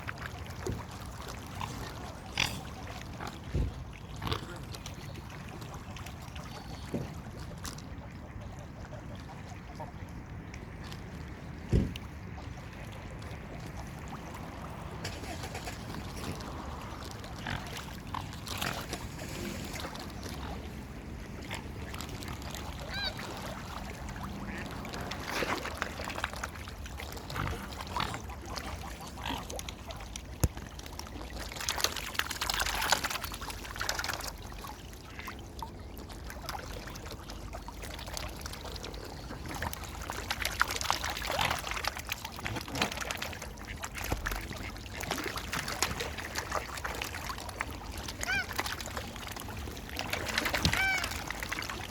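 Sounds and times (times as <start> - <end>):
splashing and flapping on water: 0.0 - 51.9
ducks quacking: 22.8 - 23.3, 48.2 - 48.6
geese calling: 48.2 - 48.5, 50.7 - 51.1.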